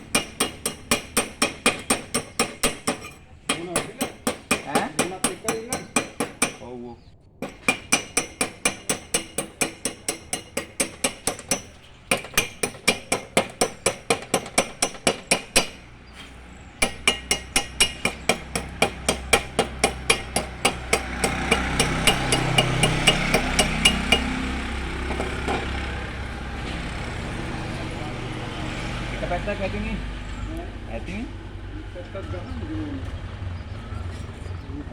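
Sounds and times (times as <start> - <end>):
hammer striking metal: 0.0 - 6.7, 7.4 - 15.9, 16.8 - 25.9
low engine-like rumble: 22.4 - 34.9.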